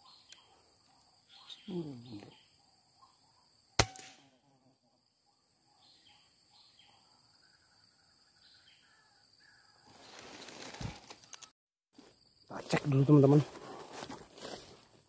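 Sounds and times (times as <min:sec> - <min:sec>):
faint bird calls: 0:00.0 - 0:03.6
air rifle shot: 0:03.8 - 0:04.2
rustling: 0:09.9 - 0:11.5.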